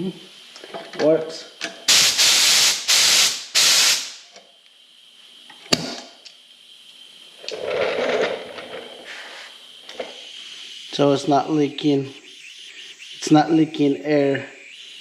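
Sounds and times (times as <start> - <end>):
bursts of hissing: 1.8 - 4.4, 6.6 - 15.0.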